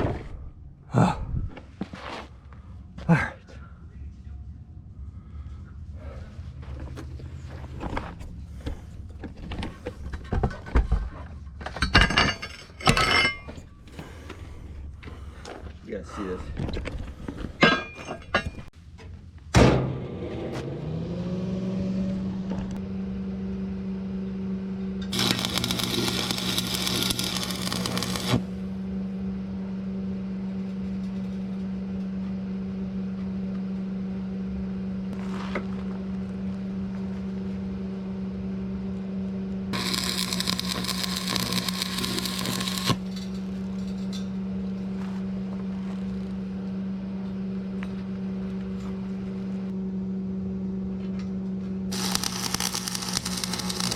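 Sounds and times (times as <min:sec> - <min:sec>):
angle grinder humming: 0:25.1 - 0:28.6, 0:39.8 - 0:43.3, 0:51.9 - 0:53.9
grinder grinding steel: 0:25.1 - 0:28.6, 0:39.8 - 0:43.4, 0:51.9 - 0:53.9.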